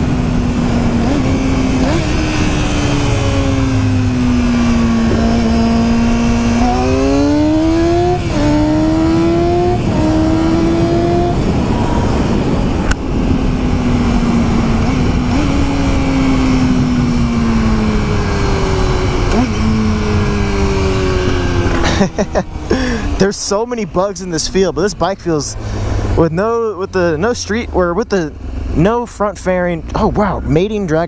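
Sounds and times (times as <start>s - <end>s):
wind rush on microphone: 0.0s - 23.2s
motorcycle engine accelerating: 0.0s - 31.0s.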